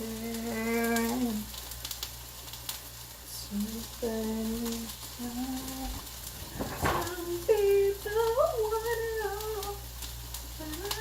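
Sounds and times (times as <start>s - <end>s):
woman singing held notes: 0.0s - 1.5s
vegetables sizzling in a frying pan: 0.0s - 11.0s.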